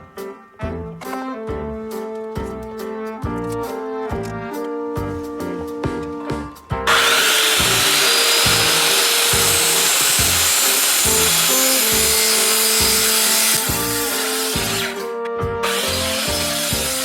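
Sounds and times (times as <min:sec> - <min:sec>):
background music: 0:00.0 - 0:17.0
circular saw cutting wood: 0:06.9 - 0:17.0.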